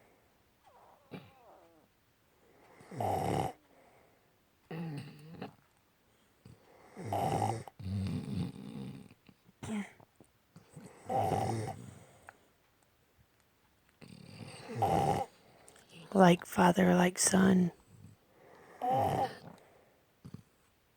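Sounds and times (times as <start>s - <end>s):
dog snoring: 0.7s - 1.8s, 2.7s - 3.6s, 4.7s - 5.6s, 6.4s - 9.2s, 10.6s - 12.3s, 14.0s - 16.1s, 17.8s - 20.6s
person snoring: 11.0s - 11.8s, 14.1s - 15.3s, 18.8s - 19.6s.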